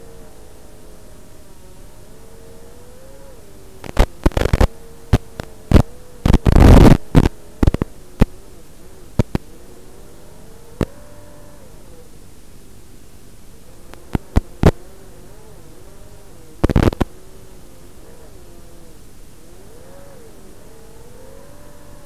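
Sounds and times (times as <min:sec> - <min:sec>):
quadcopter motors whining: 0:00.0 - 0:12.3, 0:13.5 - 0:22.0
sharp crackling bursts: 0:02.5 - 0:09.7, 0:13.8 - 0:18.2.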